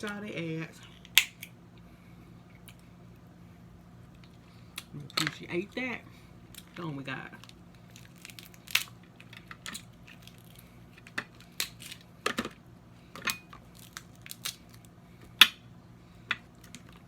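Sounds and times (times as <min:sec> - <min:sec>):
crab shells cracking and crunching: 0:01.0 - 0:01.5, 0:06.5 - 0:06.8, 0:07.4 - 0:12.6, 0:13.2 - 0:15.7, 0:16.3 - 0:17.0.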